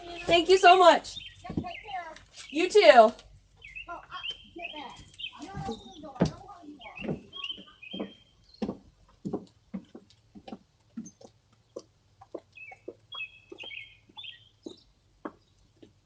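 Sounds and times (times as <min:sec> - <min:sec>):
high bird chirps: 0:00.0 - 0:02.8, 0:03.6 - 0:08.6, 0:12.6 - 0:14.9
bird clucking calls: 0:03.6 - 0:08.3, 0:12.3 - 0:14.9.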